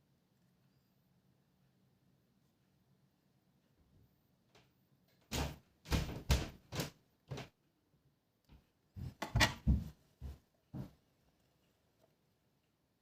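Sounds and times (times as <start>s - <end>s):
short knocks and thumps: 5.3s - 7.5s, 8.5s - 11.0s.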